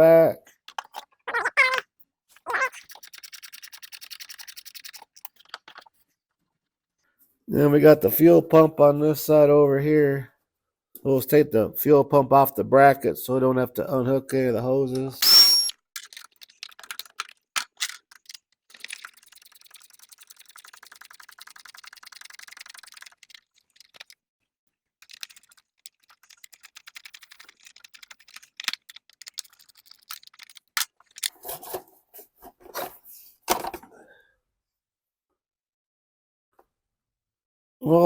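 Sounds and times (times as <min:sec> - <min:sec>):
scattered ticks: 0:02.6 - 0:05.9, 0:16.0 - 0:24.2, 0:25.0 - 0:31.3
metal tools clunking: 0:15.2 - 0:15.7.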